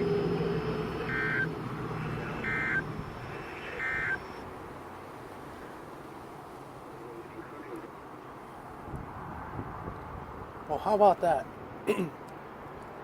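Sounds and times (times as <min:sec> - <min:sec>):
buzzy digital data bursts: 0:00.0 - 0:04.5
low radio hiss: 0:00.0 - 0:08.8.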